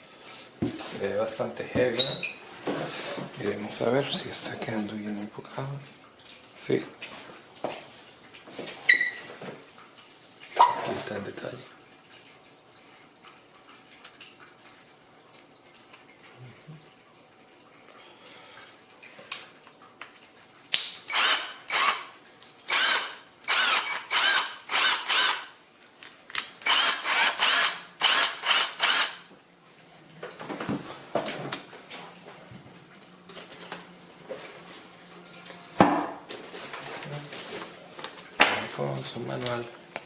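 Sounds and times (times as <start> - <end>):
impact wrench motor whine: 21.1 - 22.1, 22.7 - 25.5, 26.6 - 29.2.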